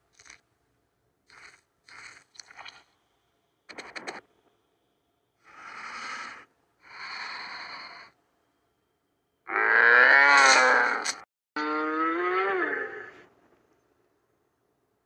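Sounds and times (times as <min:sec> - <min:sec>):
breathy wheezing exhales: 0:05.4 - 0:08.2.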